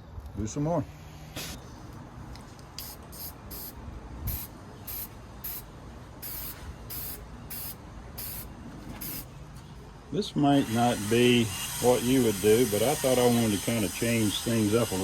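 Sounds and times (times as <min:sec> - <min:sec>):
spray can hissing bursts: 0:02.8 - 0:09.3.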